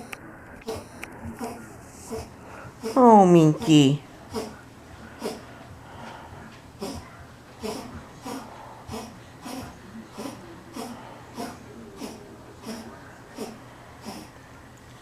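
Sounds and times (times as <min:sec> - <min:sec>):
pet sneezing and snorting: 0:00.6 - 0:03.0, 0:04.3 - 0:04.6, 0:05.2 - 0:05.5, 0:06.8 - 0:14.4.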